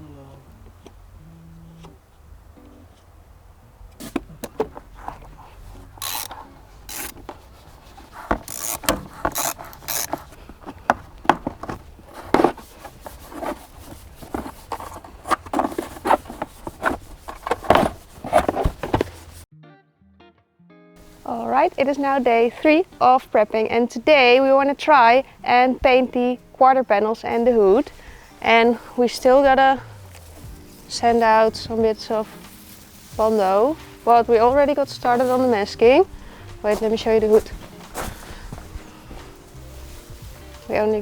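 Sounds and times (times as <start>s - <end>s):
scraping and rubbing on car panels: 4.0s - 19.4s.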